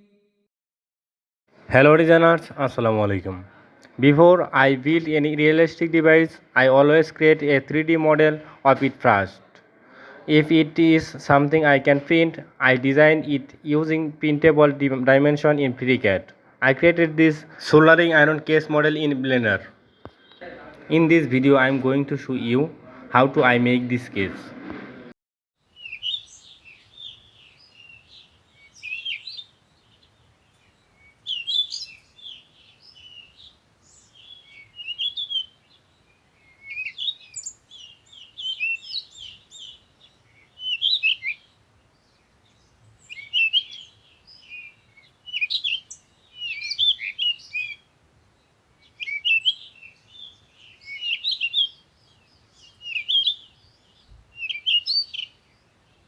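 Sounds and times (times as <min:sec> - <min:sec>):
small birds chirping: 0:17.7 - 0:22.6, 0:25.6 - 0:56.0.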